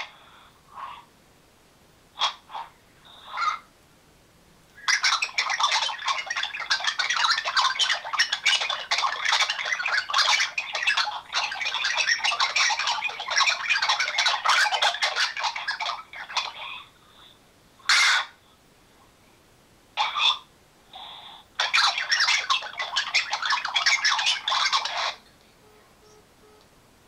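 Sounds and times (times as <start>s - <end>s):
rapid chattering and clicking noise: 4.8s - 16.6s, 21.6s - 25.4s.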